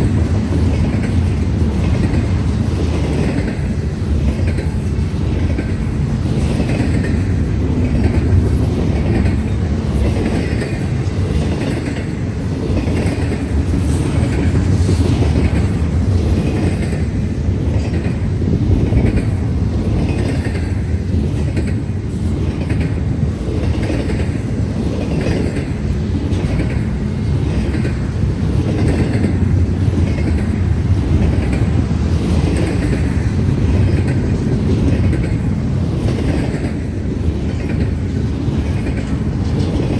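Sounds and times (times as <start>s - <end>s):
freight train rumbling past: 0.0s - 39.9s
wheels clacking on rails: 0.0s - 39.9s.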